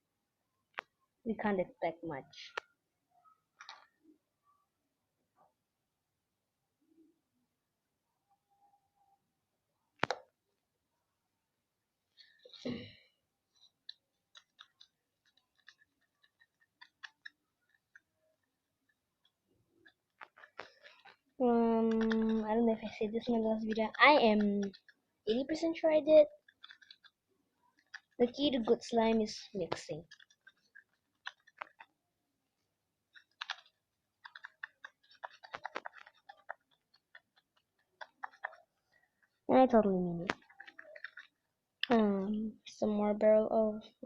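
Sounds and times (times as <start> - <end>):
sticky clicks of slime mixing: 13.6 - 32.0, 33.1 - 39.5.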